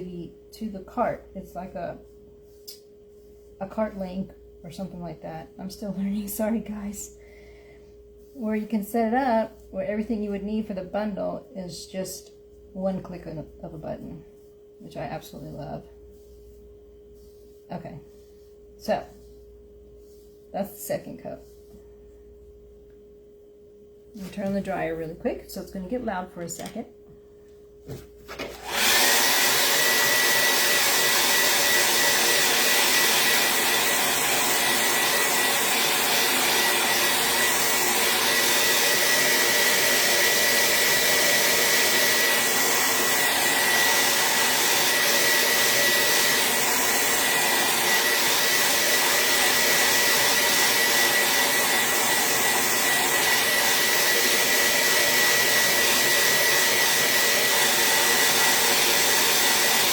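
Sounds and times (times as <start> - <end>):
handheld dryer blowing with whine: 27.9 - 59.9.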